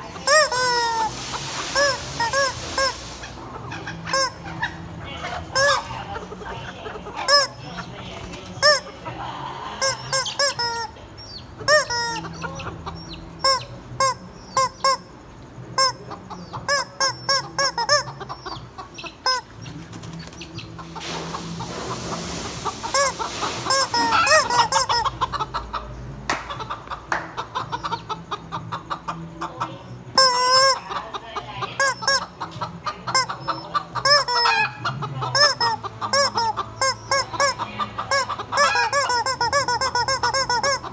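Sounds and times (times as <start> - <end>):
hens clucking: 0.0 - 40.9
rushing noise: 21.0 - 24.8.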